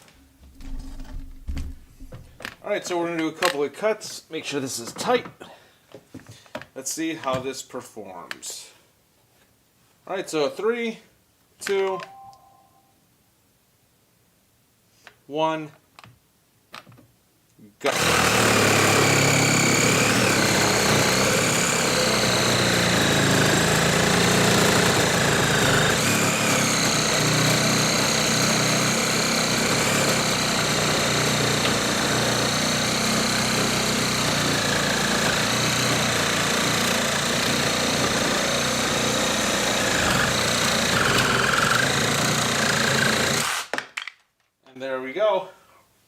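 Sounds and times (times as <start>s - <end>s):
reciprocating saw cutting: 17.9s - 43.7s.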